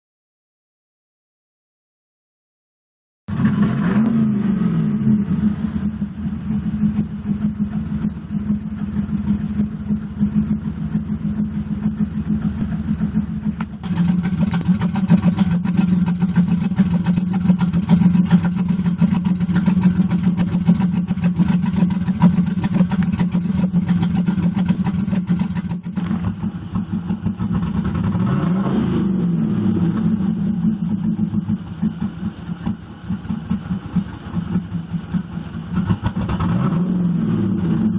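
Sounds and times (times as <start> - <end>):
car engine misfiring: 3.3 - 37.9.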